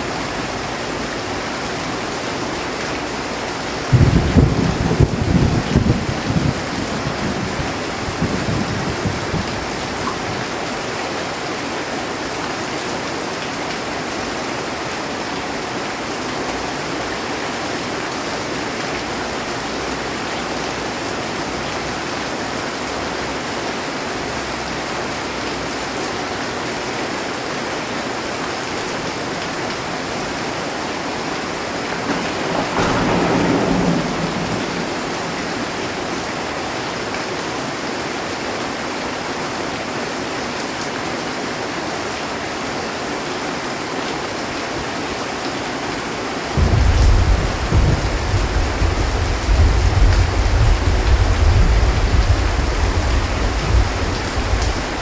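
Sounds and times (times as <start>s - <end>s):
heavy rain on a metal roof: 0.0s - 55.0s
thunderclap: 0.1s - 10.6s, 31.3s - 37.8s, 46.5s - 55.0s.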